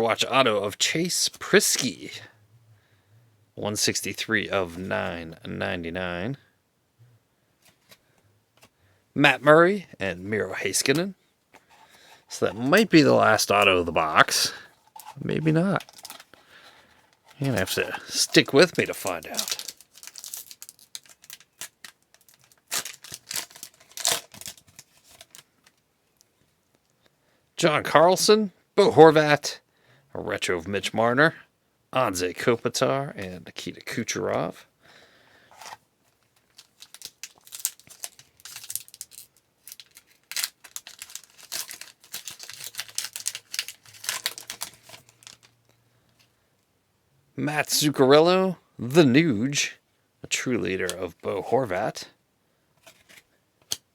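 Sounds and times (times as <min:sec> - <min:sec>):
cards being handled: 0:10.7 - 0:25.5, 0:35.5 - 0:45.5, 0:52.8 - 0:53.8
wrapper tearing: 0:12.3 - 0:16.4, 0:17.2 - 0:25.5, 0:36.4 - 0:45.6.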